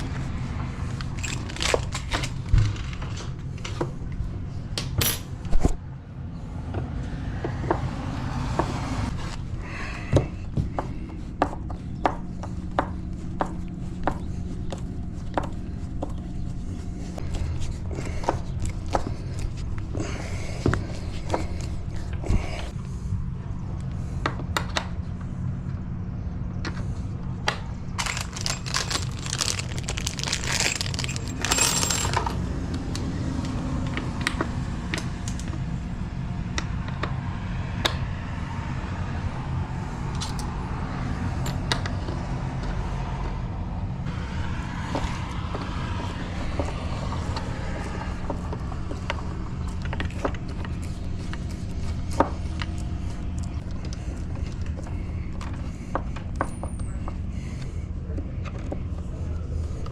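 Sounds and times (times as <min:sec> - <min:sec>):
steady low rumble: 0:00.0 - 0:56.4
keys clinking: 0:01.0 - 0:03.2, 0:28.0 - 0:32.4.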